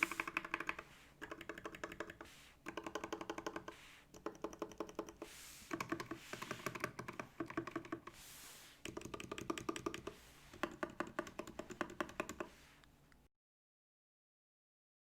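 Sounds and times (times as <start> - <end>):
typing on mechanical keyboard: 0.0 - 8.1, 8.8 - 12.5.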